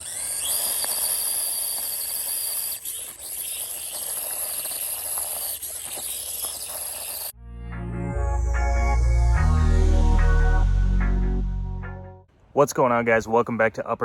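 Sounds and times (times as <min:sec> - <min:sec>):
small electric motor whining: 0:00.0 - 0:07.4.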